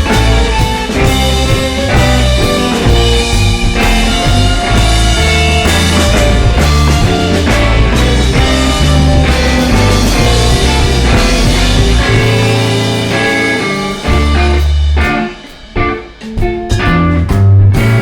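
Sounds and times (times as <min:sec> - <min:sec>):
blues-rock band playing: 0:00.0 - 0:18.0.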